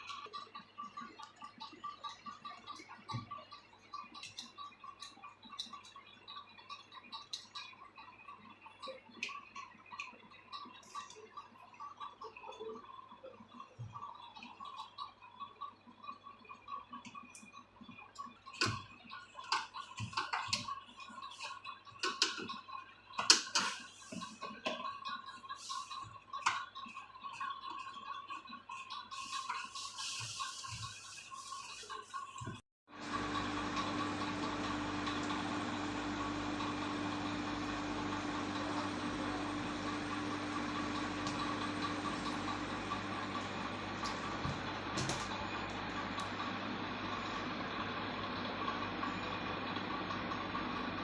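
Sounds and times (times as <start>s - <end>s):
machine hum: 32.9s - 51.0s.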